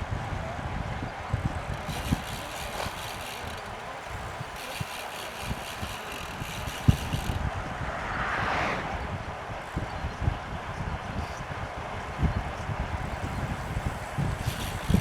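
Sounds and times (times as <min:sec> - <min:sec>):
wind buffeting microphone: 0:00.0 - 0:15.0
bike freehub ratchet buzzing: 0:01.4 - 0:07.4, 0:13.0 - 0:15.0.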